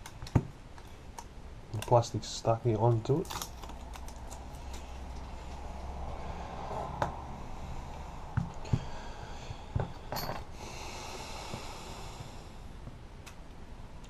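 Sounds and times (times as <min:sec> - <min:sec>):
faint steady hum: 0:00.0 - 0:14.0
hands handling phone parts: 0:02.8 - 0:05.3.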